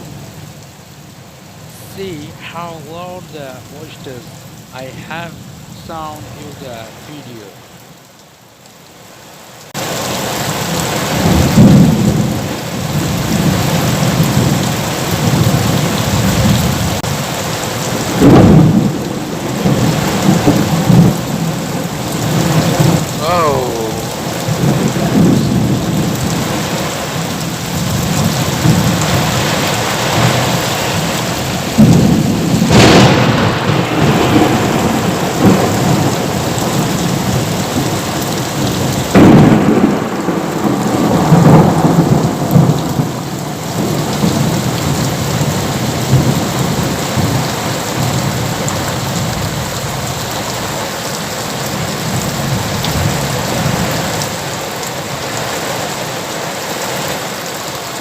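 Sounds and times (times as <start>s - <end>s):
heavy rain: 0.0s - 58.0s
thunderclaps and rumbling: 10.8s - 23.2s, 24.0s - 50.7s.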